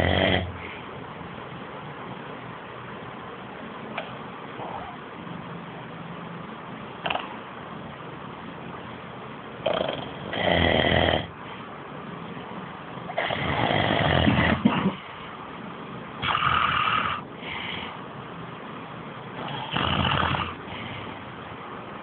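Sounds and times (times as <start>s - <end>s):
man snoring loudly: 0.0s - 0.5s, 9.6s - 11.3s, 13.2s - 14.6s, 19.4s - 20.6s.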